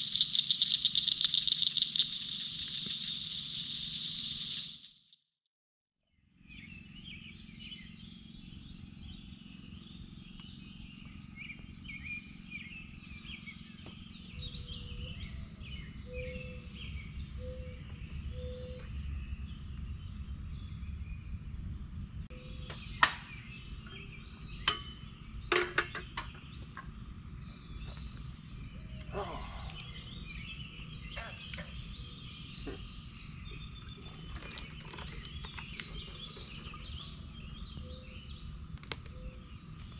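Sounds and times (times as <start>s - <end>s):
sharp clicks: 0.0s - 4.8s
birds calling and chirping: 0.0s - 4.9s, 6.3s - 39.9s
frogs calling: 0.0s - 5.1s, 22.3s - 39.9s
low steady rumble: 6.3s - 39.9s
short low hoots: 29.0s - 30.1s.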